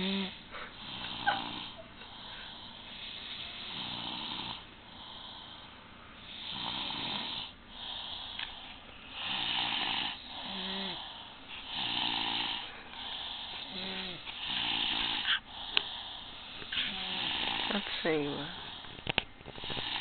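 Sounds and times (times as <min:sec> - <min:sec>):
loud snoring: 0:00.0 - 0:01.8, 0:03.5 - 0:04.6, 0:06.3 - 0:08.3, 0:09.2 - 0:15.9, 0:16.7 - 0:18.8, 0:19.6 - 0:20.0.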